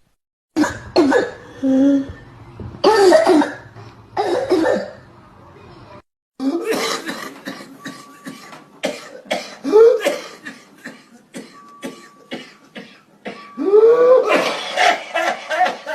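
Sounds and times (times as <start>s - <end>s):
person coughing: 0.6s - 2.1s, 6.4s - 15.7s.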